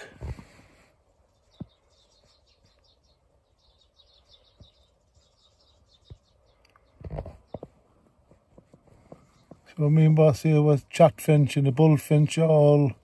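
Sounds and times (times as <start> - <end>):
small birds chirping: 0.0 - 13.0
muffled rustle: 6.9 - 9.9.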